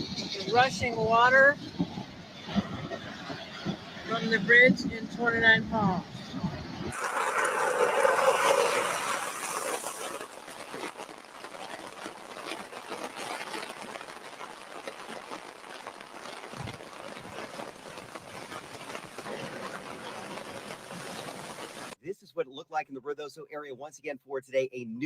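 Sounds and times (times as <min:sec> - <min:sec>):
flood water rushing: 0:06.9 - 0:22.0.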